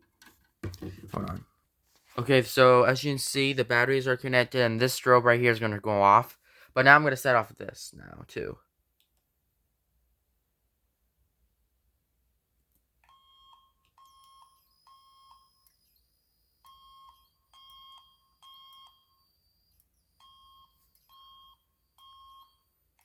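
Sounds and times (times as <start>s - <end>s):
fire alarm beeps: 13.0s - 23.0s.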